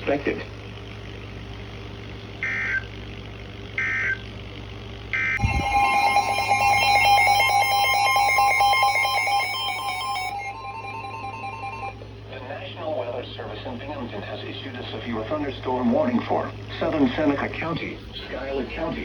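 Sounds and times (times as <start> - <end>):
digital data bursts: 5.4 - 11.9
pulsing multi-pitch alert tone: 5.4 - 12.0.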